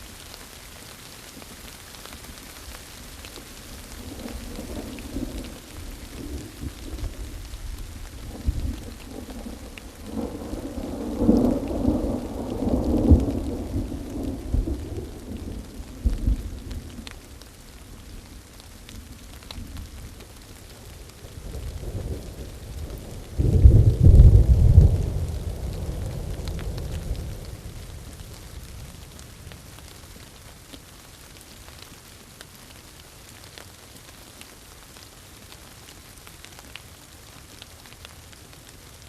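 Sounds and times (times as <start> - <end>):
steady rain: 0.0 - 39.0
thunder rumbling: 3.7 - 17.1, 20.9 - 29.8.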